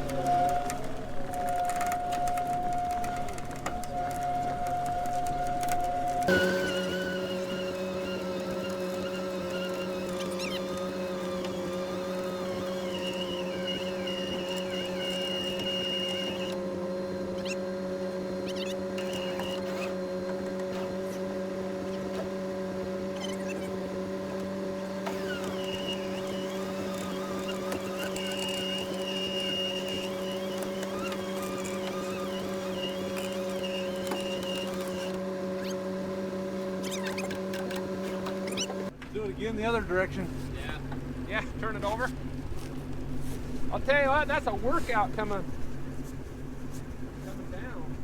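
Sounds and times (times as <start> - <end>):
high squeal: 0.0 - 16.6, 25.1 - 35.8
snow vehicle engine drone: 0.0 - 48.0.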